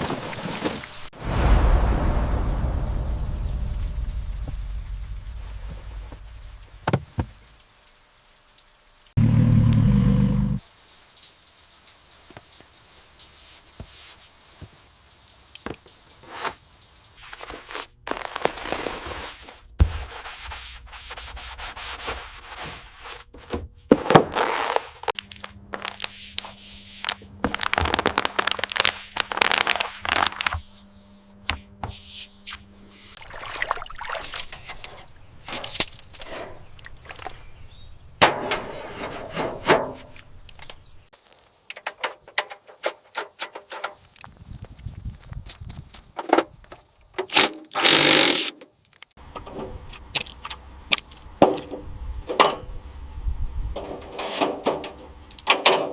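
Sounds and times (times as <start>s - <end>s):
sanding scraping strokes: 19.0s - 23.3s.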